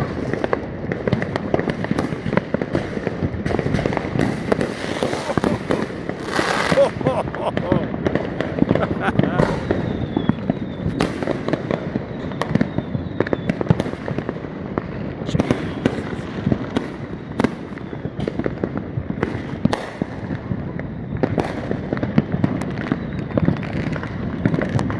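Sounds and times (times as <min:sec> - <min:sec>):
fireworks bangs and pops: 0:00.0 - 0:24.9
fireworks crackling: 0:03.5 - 0:11.2.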